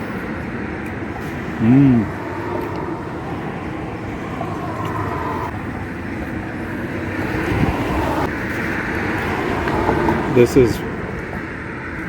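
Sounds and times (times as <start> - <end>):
vehicle traffic rumble: 0.0 - 12.0.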